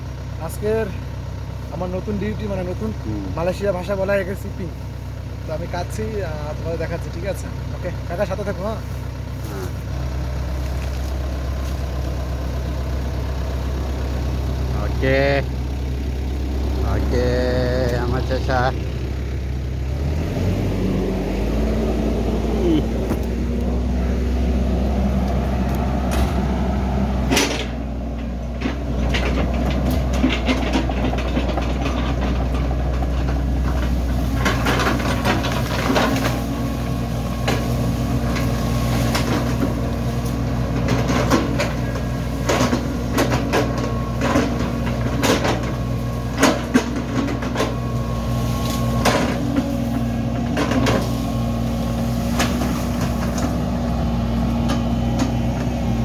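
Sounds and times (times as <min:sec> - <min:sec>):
excavator diesel engine running: 0:00.0 - 0:56.0
metal knocks and clatters: 0:27.3 - 0:36.5.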